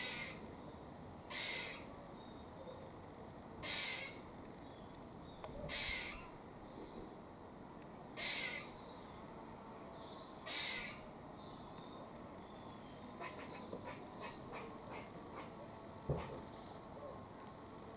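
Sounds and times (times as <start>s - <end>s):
squirrel alarm call: 0.0s - 0.4s, 1.3s - 1.9s, 3.6s - 4.2s, 5.7s - 6.4s, 8.2s - 8.7s, 10.4s - 11.1s, 13.2s - 15.6s.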